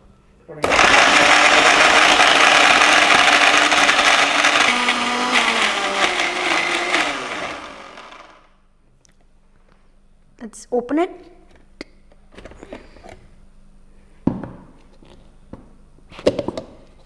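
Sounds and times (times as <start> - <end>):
mixer grinder running: 0.6 - 8.5.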